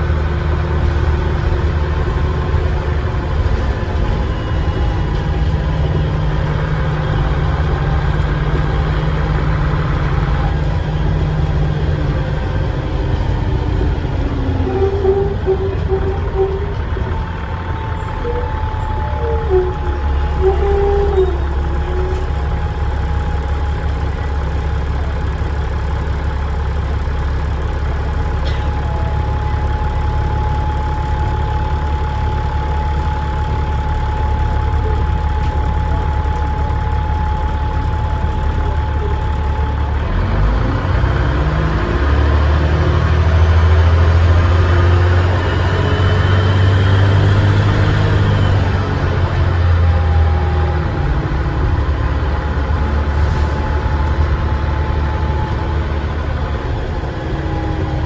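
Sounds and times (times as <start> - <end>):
bus diesel engine idling: 0.0 - 58.0
turbo whistle: 14.5 - 22.3.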